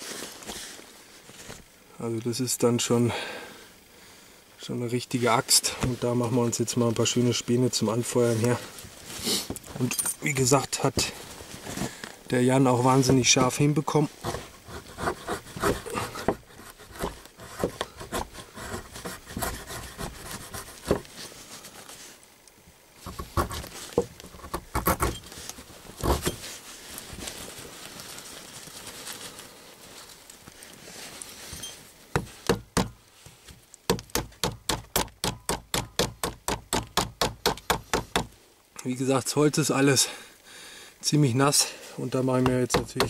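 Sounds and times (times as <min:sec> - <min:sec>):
knife scraping wet wood: 0:14.2 - 0:21.0.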